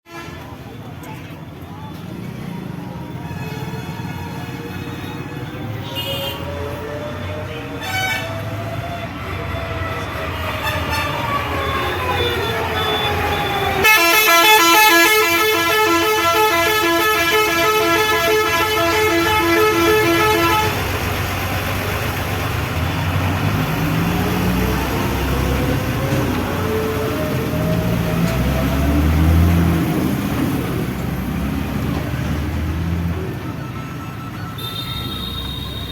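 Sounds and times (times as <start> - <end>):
traffic rumble: 0.1 - 35.9
vehicle engines running: 0.2 - 35.9
vehicle horn blaring in pulses: 3.2 - 6.8, 7.7 - 8.5, 12.0 - 20.9, 34.6 - 35.9.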